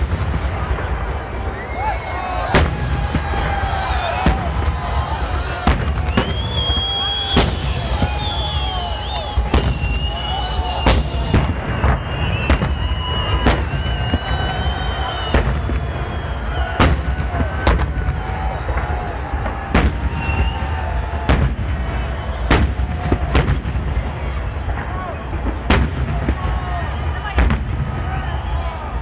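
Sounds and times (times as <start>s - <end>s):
firework bangs: 0.0s - 29.0s
whistling tones: 1.4s - 2.5s, 3.5s - 17.1s, 19.9s - 21.1s, 21.8s - 22.8s, 26.5s - 29.0s.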